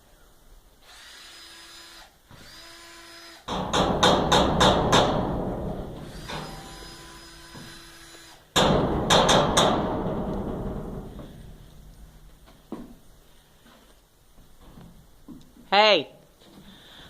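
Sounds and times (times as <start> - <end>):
power drill motor whine: 0.8 - 3.5
loud rattling clatter: 3.5 - 7.2, 8.6 - 12.4.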